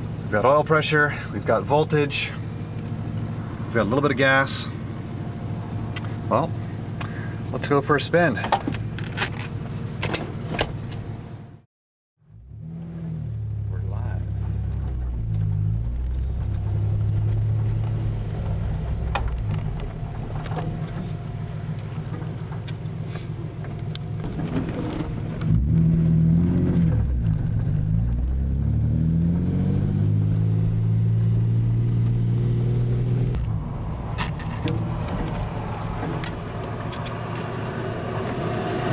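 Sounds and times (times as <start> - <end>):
car engine driving: 0.0 - 11.6, 12.2 - 38.9.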